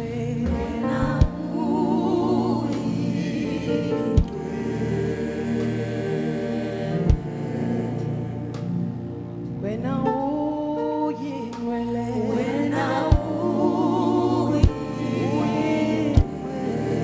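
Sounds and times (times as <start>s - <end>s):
gospel choir singing: 0.0s - 17.0s
sustained keyboard chords: 0.0s - 17.0s
low thumps: 0.4s - 1.9s.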